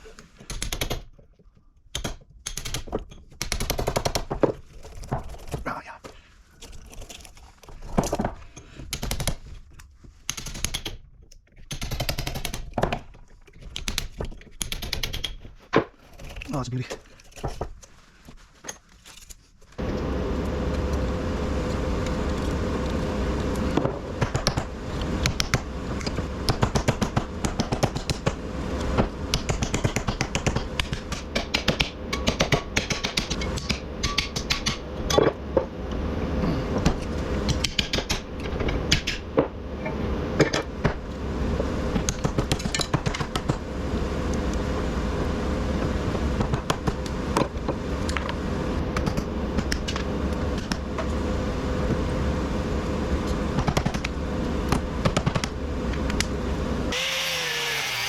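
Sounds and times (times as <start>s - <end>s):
machine humming: 19.8s - 32.4s, 43.5s - 58.0s.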